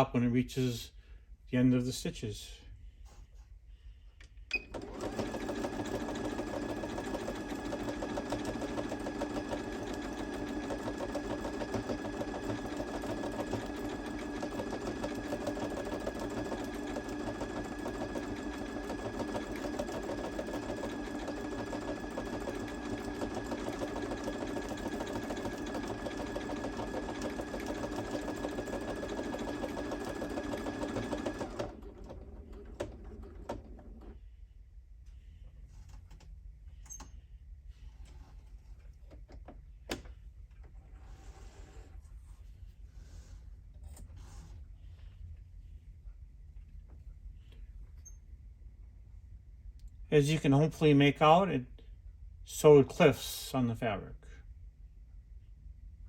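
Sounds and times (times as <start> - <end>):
sewing machine motor whine: 4.6 - 34.2.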